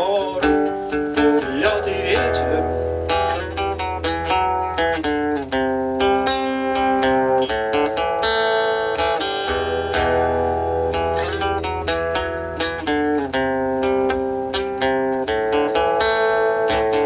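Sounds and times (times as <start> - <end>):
person singing: 0.0 - 2.8
guitar picking a melody: 0.0 - 17.0.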